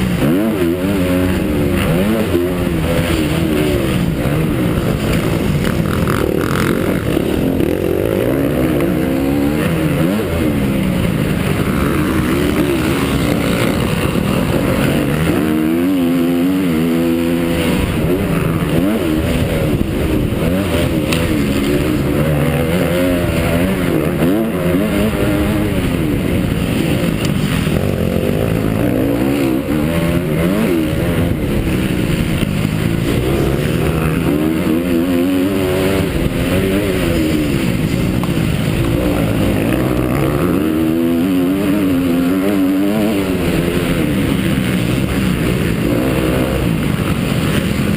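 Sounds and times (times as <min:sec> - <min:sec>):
motocross bike engine revving: 0:00.0 - 0:47.9.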